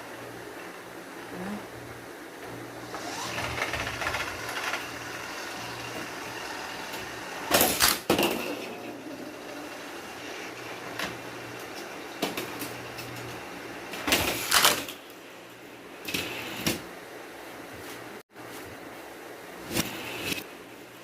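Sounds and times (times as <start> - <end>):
toy cars rattling on plastic track: 3.0 - 11.1, 14.0 - 15.0.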